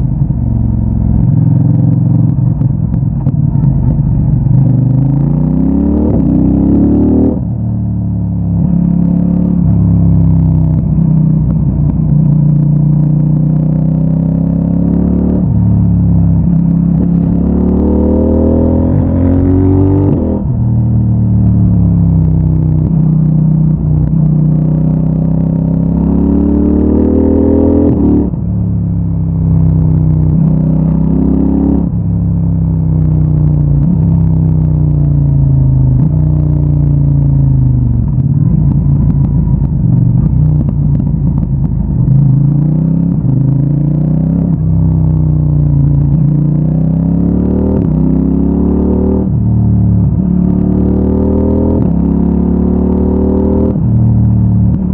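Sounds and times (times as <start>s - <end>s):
motorcycle engine accelerating: 0.0s - 54.9s.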